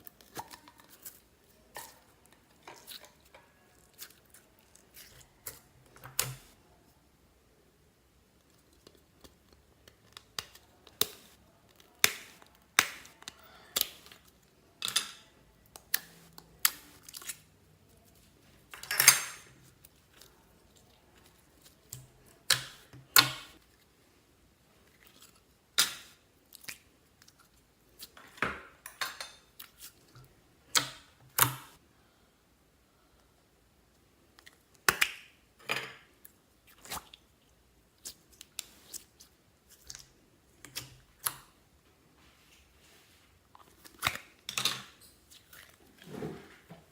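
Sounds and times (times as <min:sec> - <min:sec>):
slime squelching by hand: 0:00.0 - 0:06.6, 0:15.6 - 0:18.7, 0:36.6 - 0:41.5, 0:45.1 - 0:46.2.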